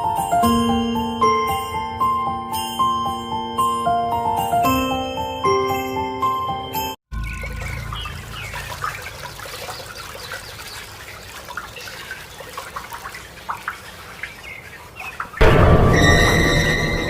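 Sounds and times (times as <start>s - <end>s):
running water splashing: 7.1s - 15.5s.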